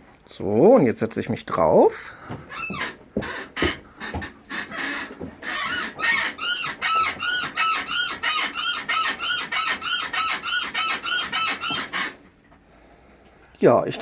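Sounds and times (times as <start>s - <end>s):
suspension bushings squeaking: 2.5s - 12.3s.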